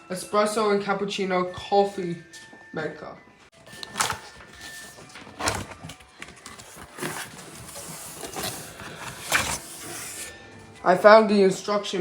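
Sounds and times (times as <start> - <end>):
cardboard scraping and rustling: 3.6 - 10.3.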